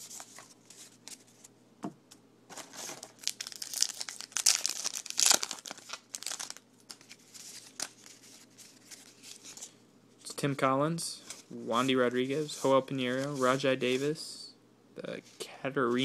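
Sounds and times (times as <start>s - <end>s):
wrapper tearing and crinkling: 2.6s - 8.1s.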